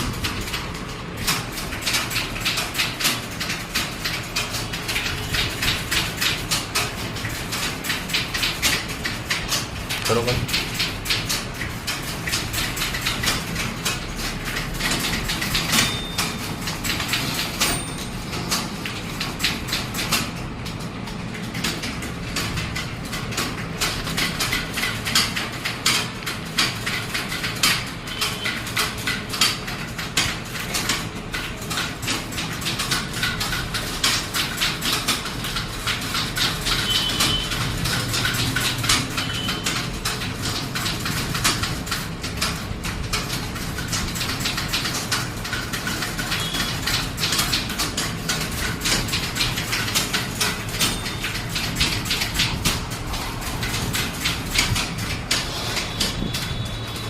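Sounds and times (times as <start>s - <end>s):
typewriter keys clattering: 0.0s - 57.0s
typewriter bell pings: 15.6s - 19.2s, 36.7s - 37.7s, 39.1s - 39.9s, 46.2s - 47.0s, 50.4s - 52.0s.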